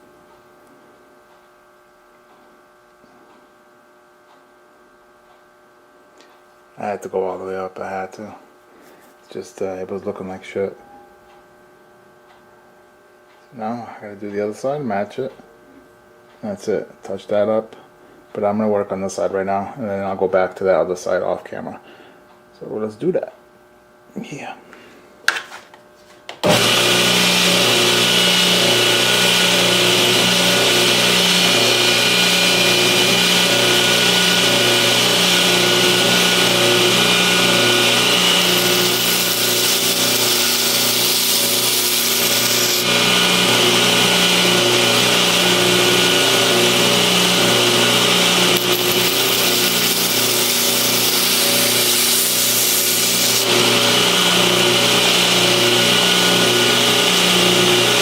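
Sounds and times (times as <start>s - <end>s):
belt grinder grinding steel blade: 26.4s - 58.0s.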